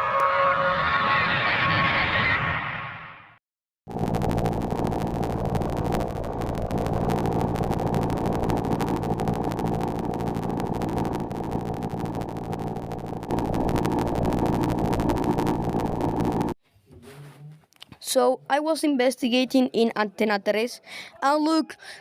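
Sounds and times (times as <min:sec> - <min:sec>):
harsh distorted static noise: 0:03.9 - 0:16.6.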